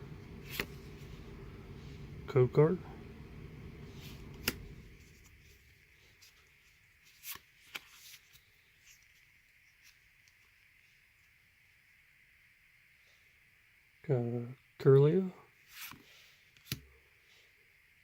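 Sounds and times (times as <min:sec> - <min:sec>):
trading cards being flicked: 0:00.4 - 0:00.9, 0:04.0 - 0:05.4, 0:16.6 - 0:16.8
sharp card clicks: 0:04.3 - 0:04.7.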